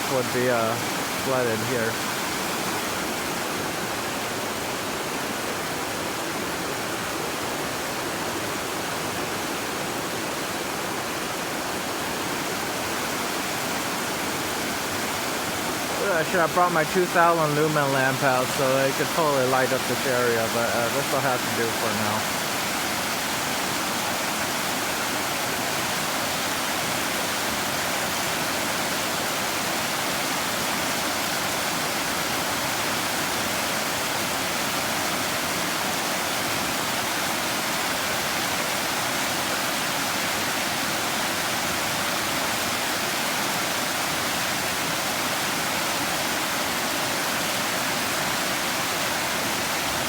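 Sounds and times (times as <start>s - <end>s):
floodwater roaring in creek: 0.0s - 50.0s.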